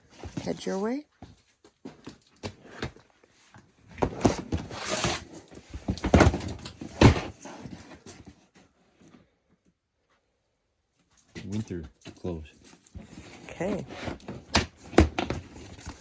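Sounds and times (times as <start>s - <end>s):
plastic bins scraping and rustling: 0.0s - 9.2s, 11.4s - 16.0s.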